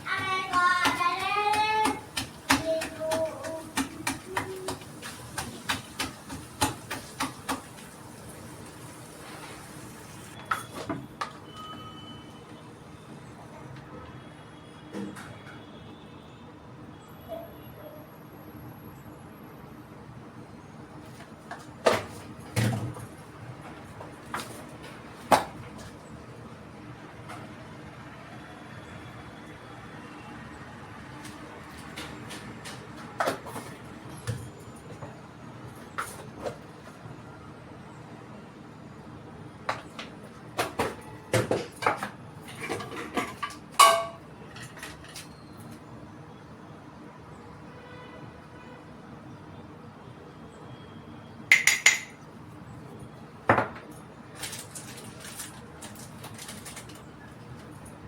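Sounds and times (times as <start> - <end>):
kitchen utensils clanking: 41.5 - 45.3, 51.5 - 52.2.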